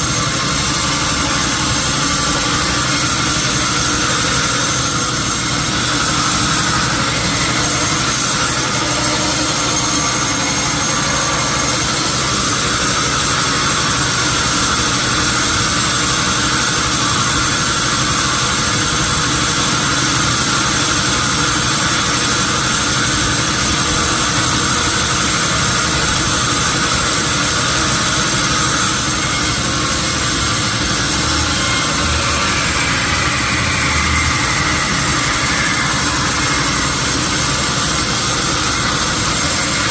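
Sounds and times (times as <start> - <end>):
sawmill machinery droning: 0.0 - 39.9.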